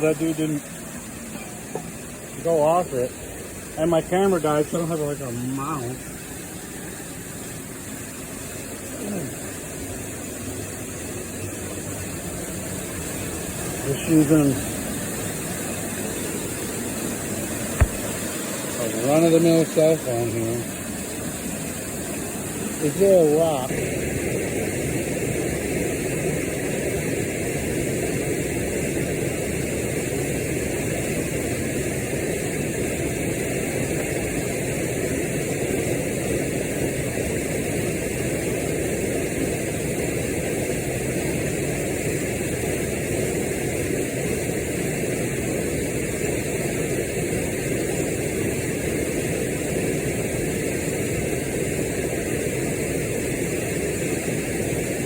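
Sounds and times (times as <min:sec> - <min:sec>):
waterfall rushing: 0:00.0 - 0:24.0
fast-flowing river water: 0:00.0 - 0:55.0.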